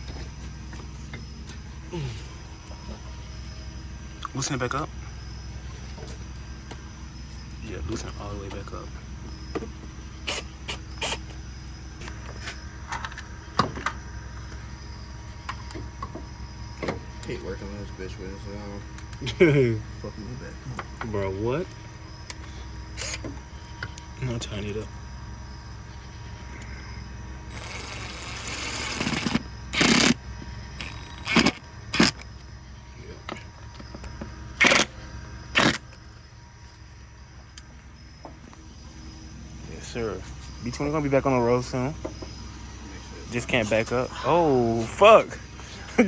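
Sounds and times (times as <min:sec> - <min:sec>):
impact wrench spinning down: 0:27.5 - 0:30.2, 0:30.8 - 0:32.2, 0:34.6 - 0:34.9, 0:35.6 - 0:35.8.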